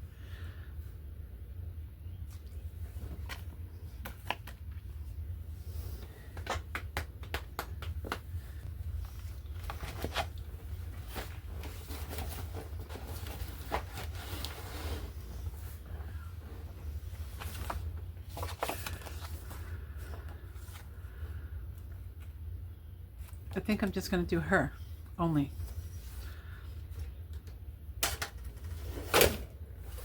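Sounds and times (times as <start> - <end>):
steady low hum: 0.0 - 30.0
paper rustling: 8.9 - 21.3.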